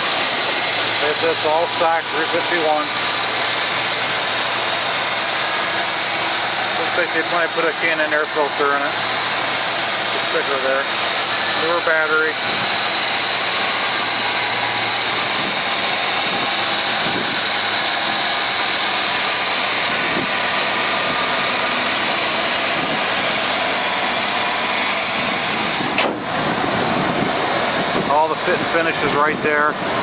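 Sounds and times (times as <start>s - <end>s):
engine idling with hiss and whir: 0.0s - 30.0s.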